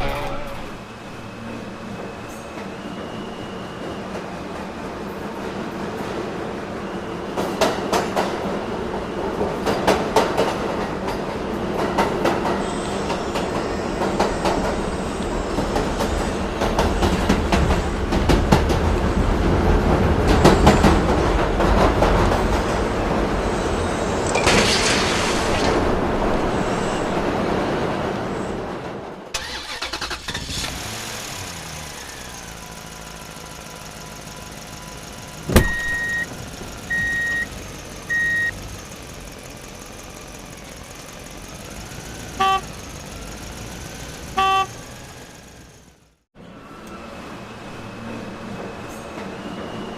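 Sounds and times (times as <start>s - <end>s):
model truck motor and gear noise: 29.4s - 47.2s.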